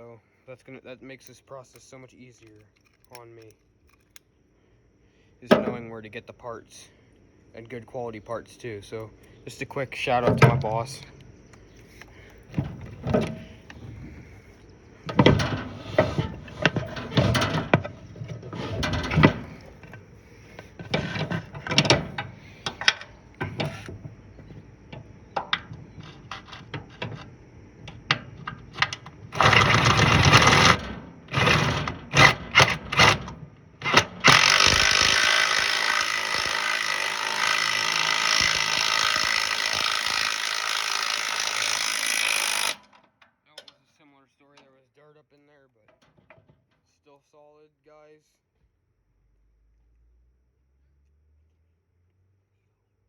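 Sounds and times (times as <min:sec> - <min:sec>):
metal tools clanking: 0:10.0 - 0:11.1, 0:11.8 - 0:27.3, 0:27.9 - 0:43.8.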